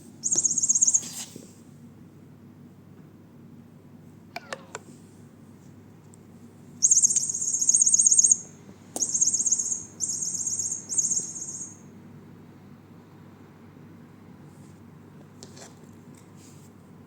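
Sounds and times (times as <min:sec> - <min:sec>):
electronic toy chirping trills: 0:00.2 - 0:01.2, 0:06.8 - 0:11.9.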